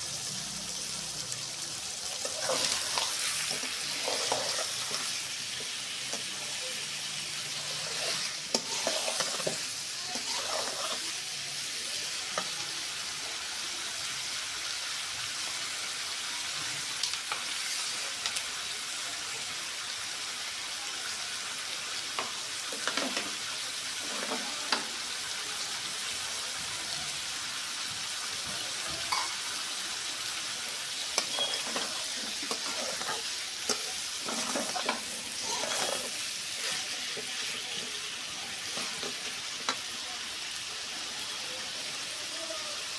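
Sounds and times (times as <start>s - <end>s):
liver sizzling in oil: 0.0s - 42.9s
spatula scraping and clicking: 7.7s - 11.0s, 31.2s - 37.6s.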